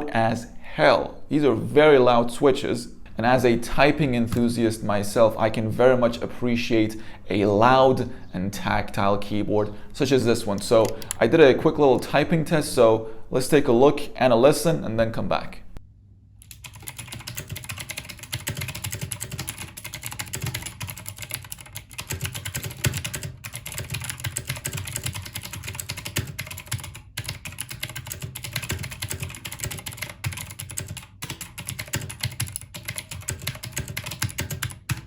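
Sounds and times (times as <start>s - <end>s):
clicky mechanical keyboard typing: 10.5s - 11.3s, 16.4s - 35.0s.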